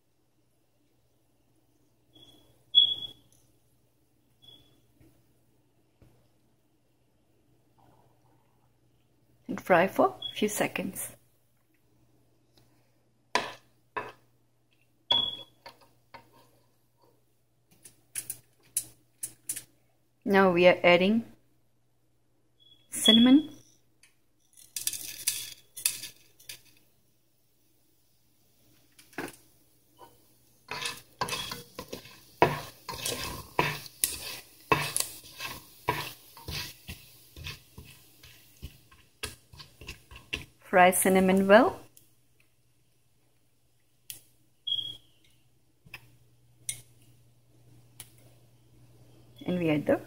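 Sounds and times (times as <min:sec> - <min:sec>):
spoon scraping a frying pan: 0:13.4 - 0:14.2, 0:30.0 - 0:40.6
utensils clinking against cookware: 0:30.7 - 0:40.4.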